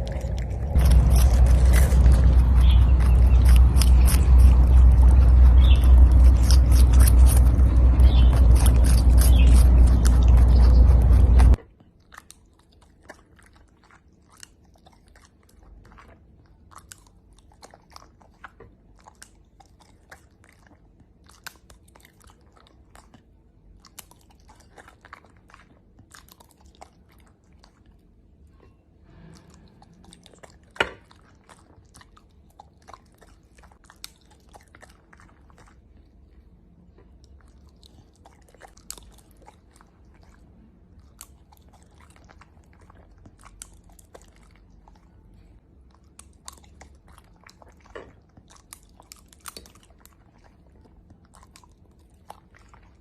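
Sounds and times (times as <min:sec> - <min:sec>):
low rumble: 0:00.0 - 0:11.6, 0:29.0 - 0:30.6
dog chewing wet smacks: 0:00.0 - 0:28.2, 0:29.8 - 0:53.0
rabbit crunching cucumber: 0:00.0 - 0:53.0.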